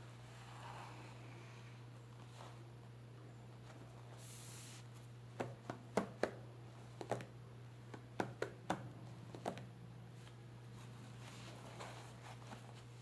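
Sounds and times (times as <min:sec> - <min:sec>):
steady low hum: 0:00.0 - 0:13.0
brief hiss: 0:04.2 - 0:04.9.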